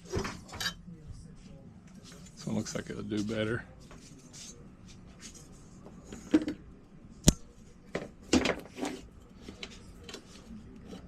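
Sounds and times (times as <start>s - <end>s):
cable rustling and scraping: 8.3s - 11.0s.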